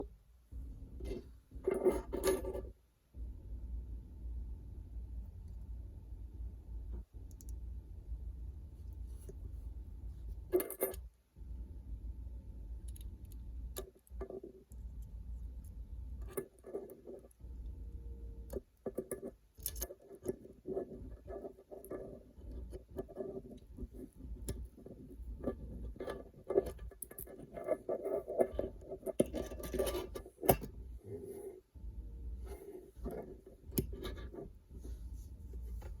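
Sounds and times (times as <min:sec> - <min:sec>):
steady low hum: 0:00.0 - 0:36.0
small gun parts clicking and scraping: 0:18.5 - 0:30.8.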